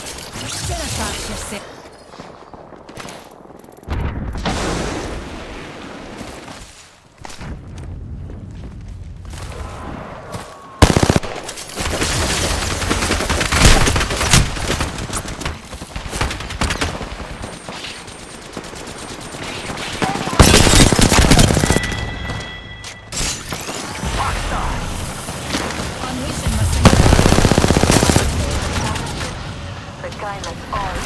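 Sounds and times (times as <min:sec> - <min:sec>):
video game automatic gunfire: 0:10.8 - 0:22.0, 0:26.7 - 0:29.4.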